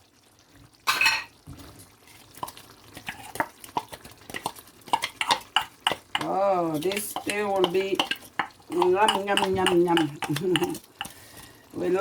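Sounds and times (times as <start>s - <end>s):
spoon clinking and scraping a pot: 2.1s - 11.5s.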